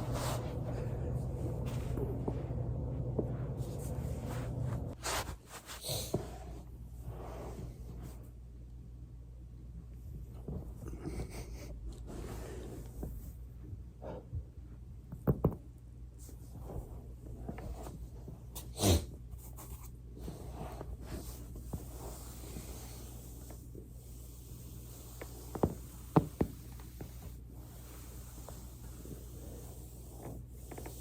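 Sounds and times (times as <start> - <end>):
rubbing against foam roller: 0.0 - 8.4, 19.3 - 31.0.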